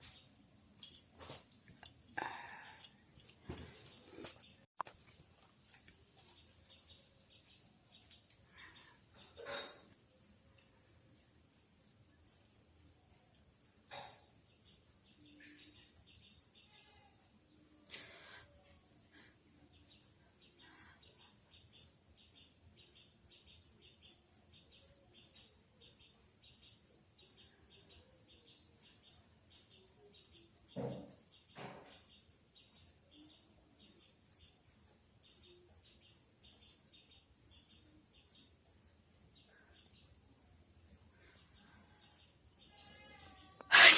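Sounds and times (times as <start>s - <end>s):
short faint noises: 43.7s - 43.9s.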